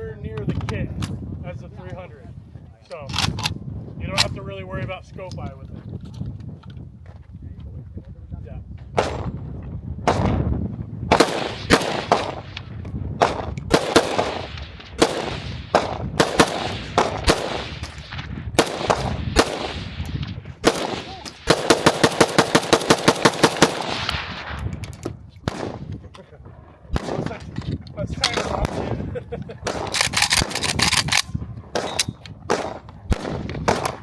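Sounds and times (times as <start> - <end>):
rapid gunfire burst: 11.1 - 12.5, 13.2 - 20.0, 20.6 - 24.4
gunshots with echo: 11.1 - 24.7, 31.7 - 34.0.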